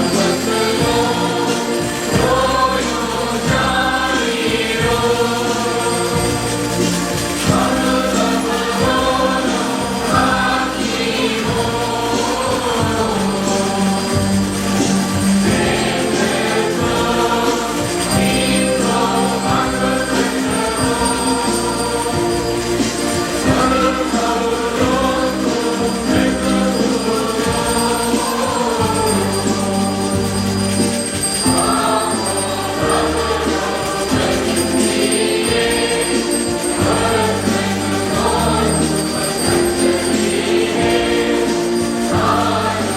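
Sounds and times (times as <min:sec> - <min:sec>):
choir singing a hymn: 0:00.0 - 0:42.9
instrumental accompaniment: 0:00.0 - 0:42.9.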